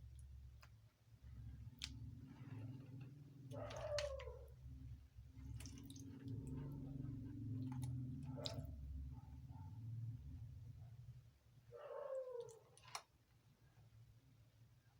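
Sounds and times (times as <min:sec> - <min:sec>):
wet eating squelches: 0:01.3 - 0:09.9.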